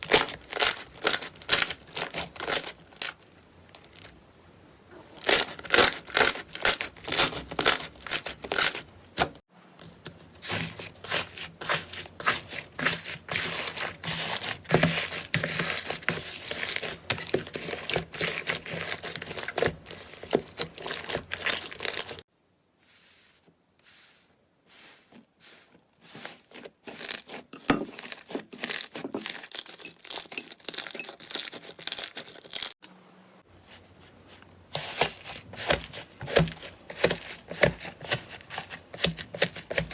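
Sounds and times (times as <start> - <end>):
slime crackling and popping: 0.0 - 4.1.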